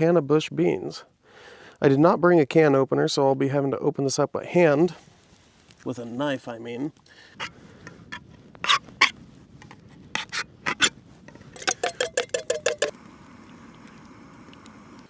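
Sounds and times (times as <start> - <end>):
knife scraping can lid: 7.4 - 12.9.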